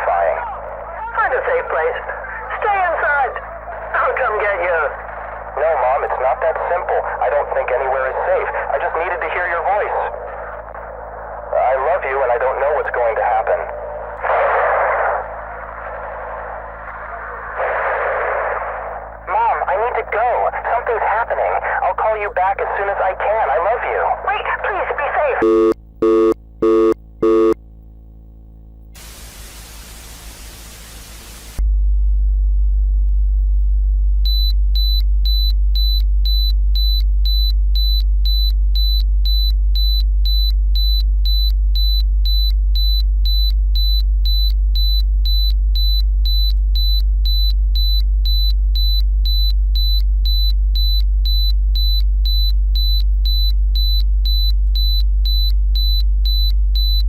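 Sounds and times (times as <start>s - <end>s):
low electronic drone: 0.0s - 21.0s
burst of static: 1.1s - 25.4s, 29.0s - 31.6s
phone beeps: 25.4s - 27.6s, 34.3s - 57.0s
short high-pitched beeps: 25.4s - 27.6s, 34.3s - 57.0s.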